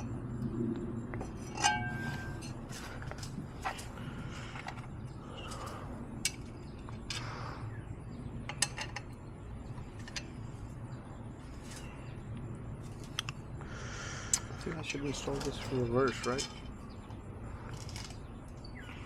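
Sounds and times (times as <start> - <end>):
tools and clamps clinking: 1.2 - 3.9, 15.1 - 18.2.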